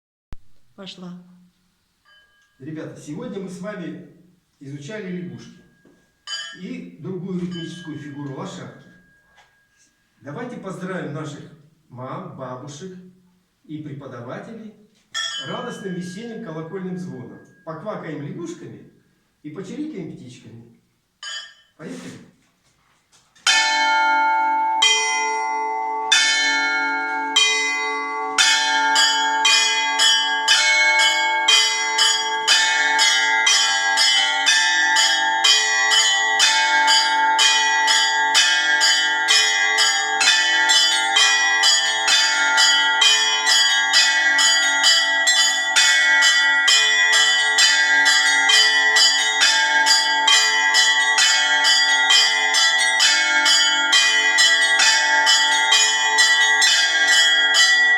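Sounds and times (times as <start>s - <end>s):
church bells pealing: 15.2s - 18.3s, 23.5s - 57.9s.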